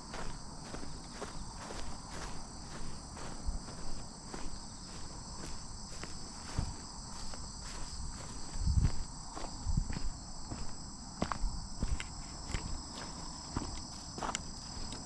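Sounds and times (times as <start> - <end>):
crickets chirping: 0.0 - 15.0
footsteps walking: 0.0 - 15.0
dull low thumps: 8.0 - 10.1.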